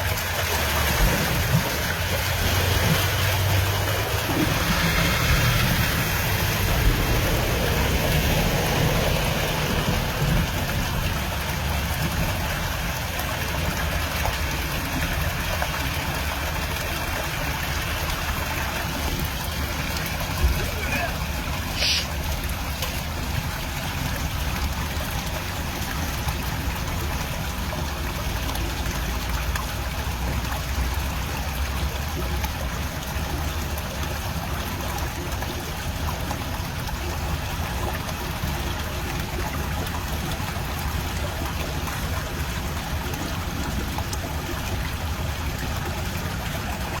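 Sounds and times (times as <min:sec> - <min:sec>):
water rushing: 0:00.0 - 0:47.0
low rumble: 0:02.3 - 0:12.6.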